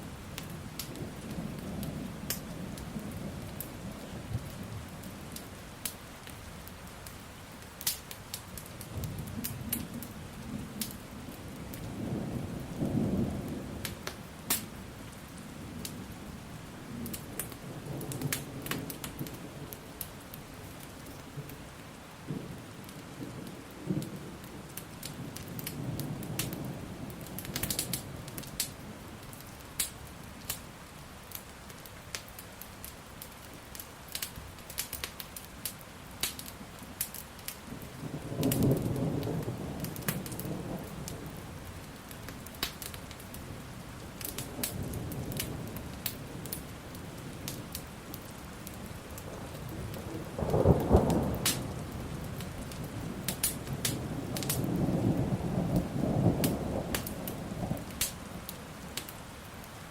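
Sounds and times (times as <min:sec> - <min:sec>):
steady rain: 0:00.0 - 0:59.9
wood fire crackling: 0:00.0 - 0:59.9
low rolling thunder: 0:08.9 - 0:14.1, 0:22.2 - 0:29.3, 0:37.6 - 0:59.1.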